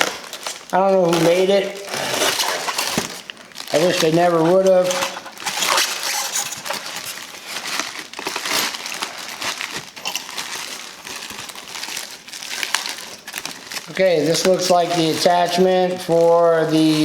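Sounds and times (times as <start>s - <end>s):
styrofoam and plastic crinkling: 0.0s - 17.0s.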